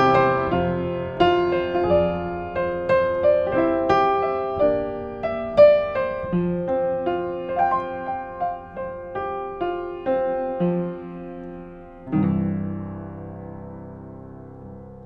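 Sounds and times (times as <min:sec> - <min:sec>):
slow gentle piano: 0:00.0 - 0:15.0.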